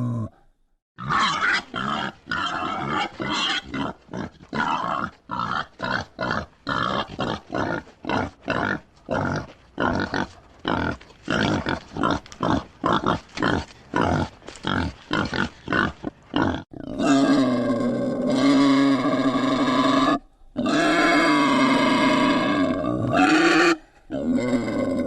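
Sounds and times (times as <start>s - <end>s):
wild boar grunting: 1.0s - 25.0s.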